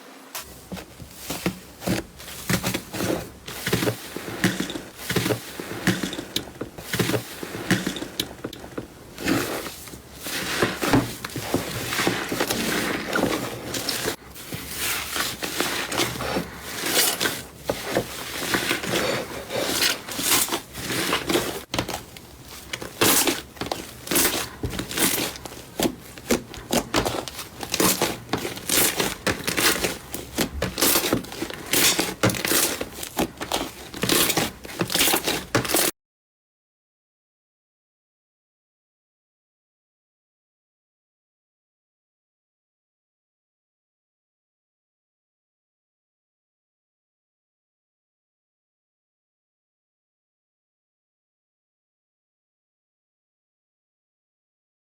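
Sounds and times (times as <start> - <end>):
slime squelching and crackling: 9.2 - 35.9.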